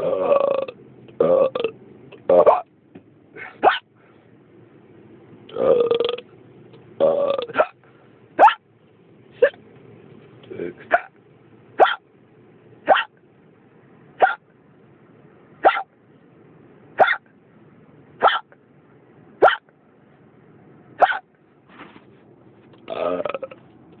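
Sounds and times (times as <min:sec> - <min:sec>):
person hiccupping: 0:00.0 - 0:02.6, 0:05.5 - 0:06.3, 0:07.0 - 0:07.8, 0:22.8 - 0:23.7.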